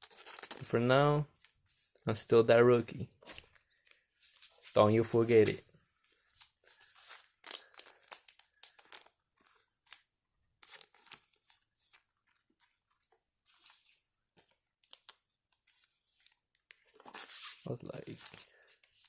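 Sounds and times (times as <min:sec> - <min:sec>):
card packs crinkling: 0:00.0 - 0:00.8, 0:06.2 - 0:12.0, 0:14.8 - 0:19.0.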